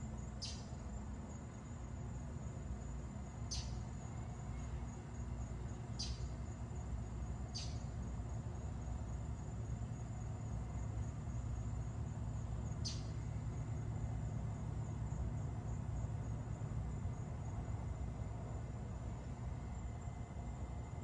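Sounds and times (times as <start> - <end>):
crickets trilling: 0.0 - 21.0
low steady hum: 0.0 - 21.0
bird chirps: 0.4 - 0.6, 3.5 - 3.8, 6.0 - 6.3, 7.6 - 7.8, 12.8 - 13.1.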